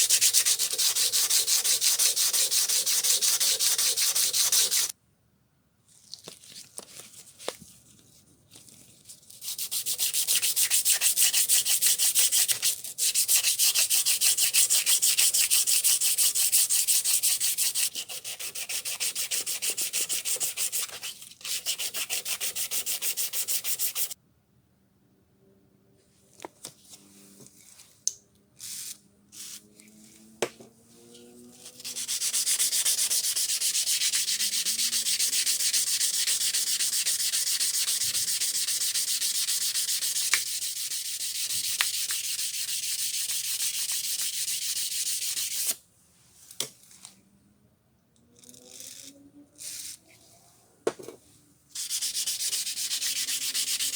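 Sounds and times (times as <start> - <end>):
sanding with abrasive: 0.0 - 4.9, 9.5 - 24.2, 31.5 - 45.7, 51.8 - 53.9.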